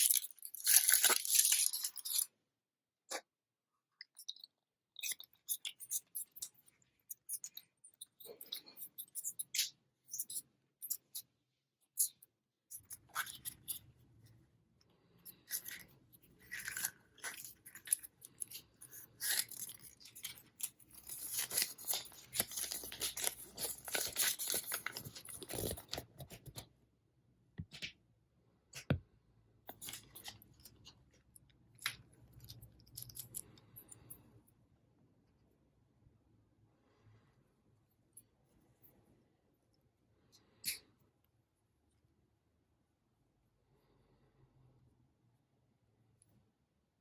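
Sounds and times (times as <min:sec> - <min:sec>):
foil wrappers crinkling and tearing: 0:00.0 - 0:02.2, 0:19.2 - 0:26.6.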